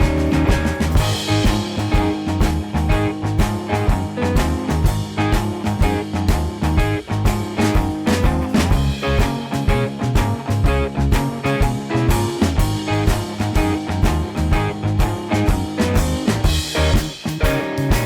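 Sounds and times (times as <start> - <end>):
rock music with guitar: 0.0 - 18.0.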